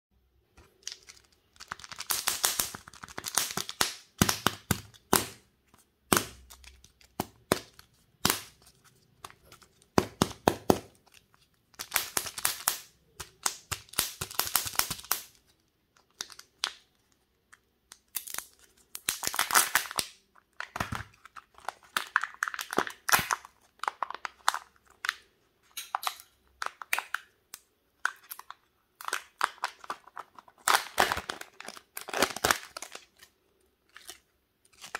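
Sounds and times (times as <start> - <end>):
foil wrappers crinkling and tearing: 0.8 - 4.0, 28.3 - 33.3
sharp foil cracks: 1.6 - 4.5.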